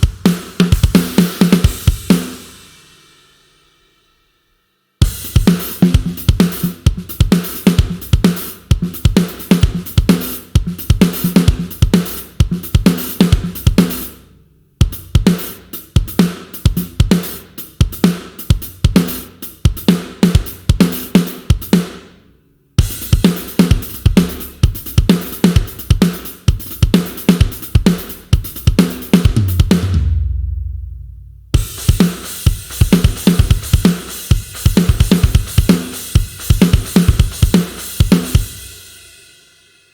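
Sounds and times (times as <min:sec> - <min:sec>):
rock drum kit grooves: 0:00.0 - 0:03.8, 0:05.0 - 0:39.9
low booming hit: 0:29.7 - 0:31.6.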